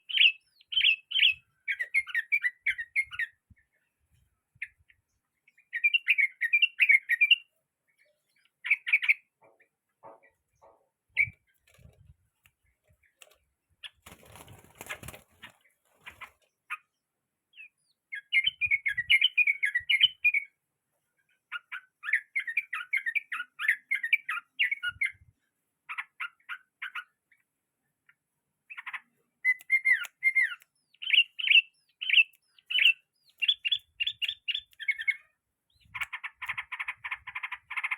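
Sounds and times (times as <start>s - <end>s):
bird chattering chirps: 28.7s - 37.9s.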